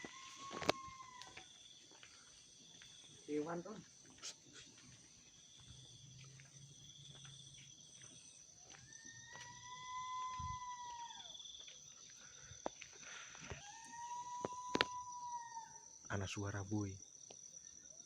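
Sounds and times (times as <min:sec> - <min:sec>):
crickets chirring: 0:00.0 - 0:18.0
animal whimpering whistle-like call: 0:09.1 - 0:11.3, 0:13.5 - 0:15.8.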